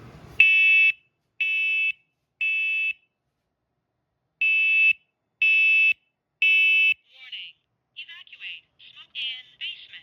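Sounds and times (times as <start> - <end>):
smoke alarm beeps: 0.4 - 3.0, 4.4 - 7.0.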